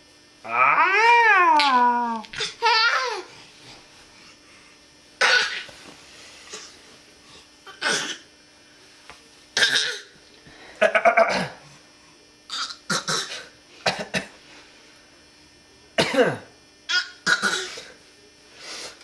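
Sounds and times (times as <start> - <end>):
baby coughing: 5.2 - 5.7, 6.5 - 6.8, 7.7 - 8.3, 9.6 - 10.1, 11.0 - 11.6, 12.5 - 14.3, 16.0 - 18.0.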